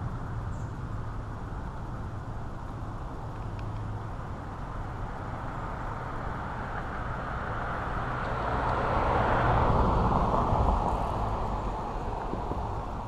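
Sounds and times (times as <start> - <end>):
car driving past: 5.4 - 13.0.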